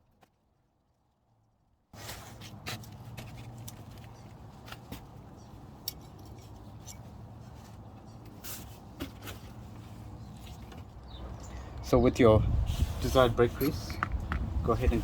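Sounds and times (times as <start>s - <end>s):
small metal parts clinking: 5.8s - 7.2s.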